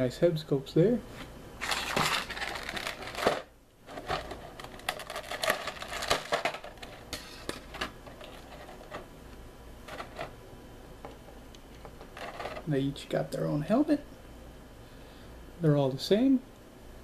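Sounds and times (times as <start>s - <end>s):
packaging rustling: 1.6s - 9.0s.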